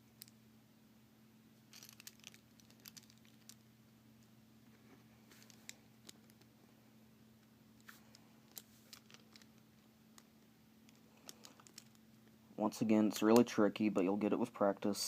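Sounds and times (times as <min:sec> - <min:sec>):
low steady hum: 0:00.0 - 0:15.0
plastic puzzle pieces clicking: 0:01.7 - 0:03.6, 0:08.5 - 0:09.6, 0:10.9 - 0:12.0.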